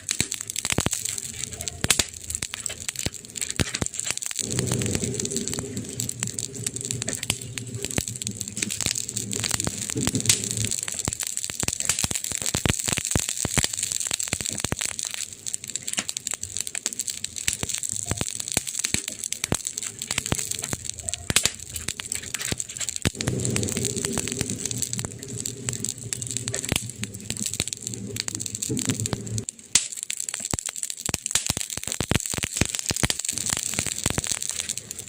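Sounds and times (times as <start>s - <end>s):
wood fire crackling: 0.0s - 35.0s
low hum: 4.4s - 10.9s, 21.6s - 29.4s.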